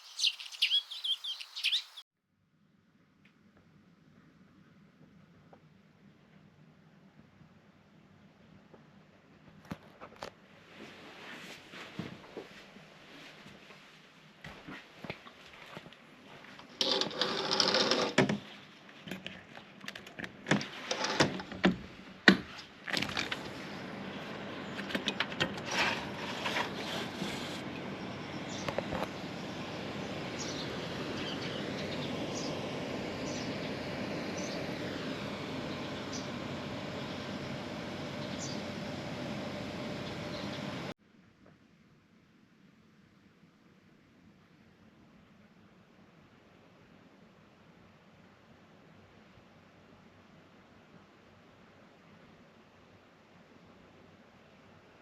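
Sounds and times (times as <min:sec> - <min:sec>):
bird high sliding chirps: 0:00.0 - 0:02.0.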